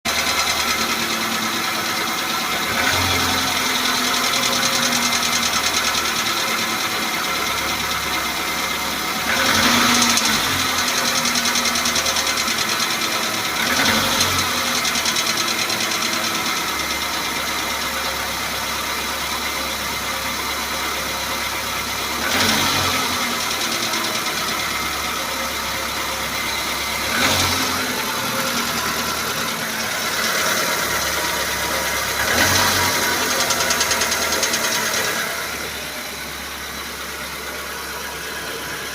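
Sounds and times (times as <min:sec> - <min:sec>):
car engine idling and revving: 0:00.0 - 0:38.9
extraneous engine noise: 0:22.2 - 0:38.9.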